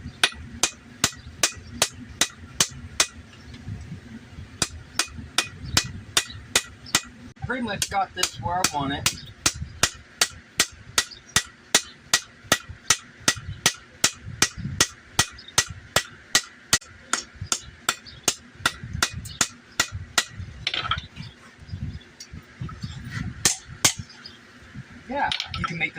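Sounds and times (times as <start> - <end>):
hammer striking steel on anvil: 0.2 - 3.2, 4.6 - 7.1, 7.8 - 20.9, 23.4 - 24.0.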